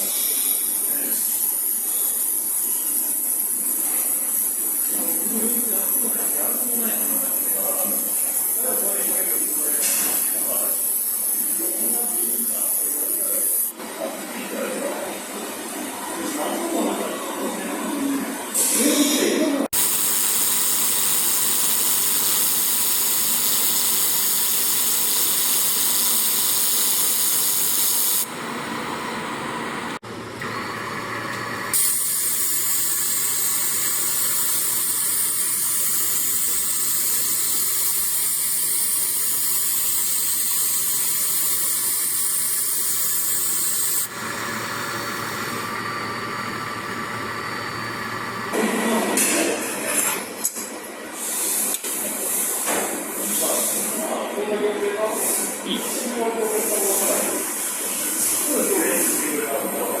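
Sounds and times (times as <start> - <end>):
laser welder hissing: 0.0 - 13.8, 19.7 - 48.6
low steady machine noise: 19.8 - 48.8.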